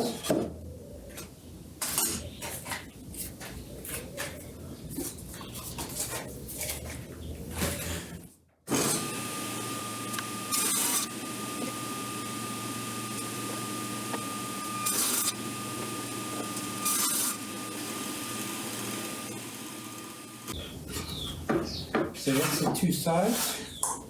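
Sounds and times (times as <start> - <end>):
power tool whining: 8.7 - 20.6.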